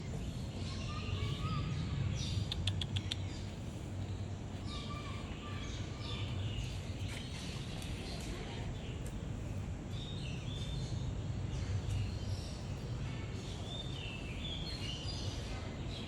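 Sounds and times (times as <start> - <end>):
birds calling and chirping: 0.0 - 16.0
sharp clicks: 2.4 - 3.3.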